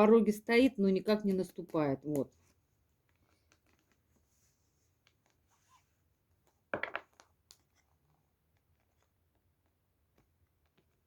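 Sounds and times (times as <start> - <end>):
cards clicking and rustling: 3.0 - 4.1.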